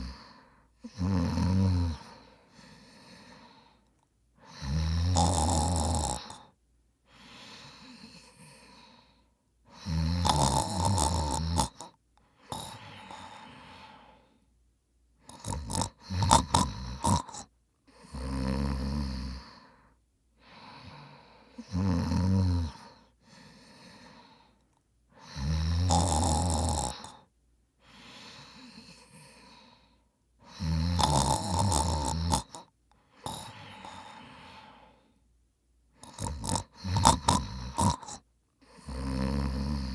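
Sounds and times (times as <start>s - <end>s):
man snoring: 0.0s - 3.6s, 4.4s - 6.5s, 9.7s - 14.2s, 15.2s - 19.6s, 20.7s - 23.0s, 25.2s - 27.3s, 30.5s - 35.0s, 36.0s - 39.9s
short irregular snorts: 15.3s - 17.5s, 36.0s - 39.9s.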